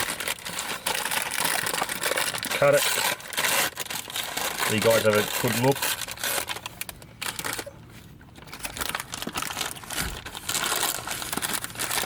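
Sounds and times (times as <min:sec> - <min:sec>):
paper bag crinkling: 0:00.0 - 0:12.0.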